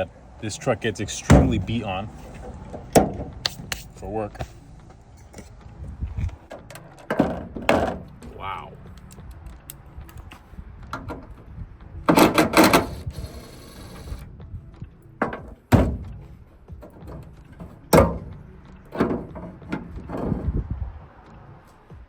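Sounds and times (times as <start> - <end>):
metal knocks and thunks: 1.1 - 3.4, 6.2 - 8.4, 12.0 - 13.1, 15.2 - 20.7.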